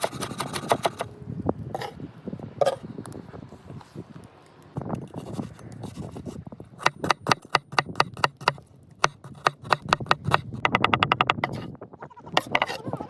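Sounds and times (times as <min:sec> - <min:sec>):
knife chopping on cutting board: 0:06.8 - 0:11.6.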